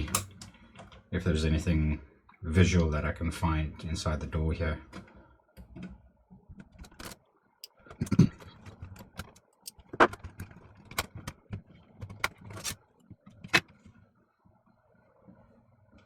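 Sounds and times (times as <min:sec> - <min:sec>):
tools clicking on plastic parts: 0:06.6 - 0:13.8.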